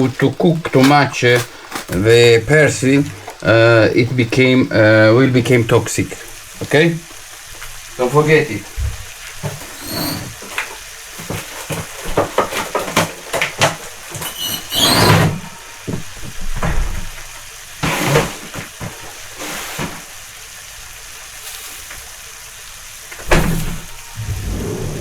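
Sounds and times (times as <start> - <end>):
pasta being stirred scraping: 9.4 - 15.1
utensils knocking against a pan: 9.4 - 15.1.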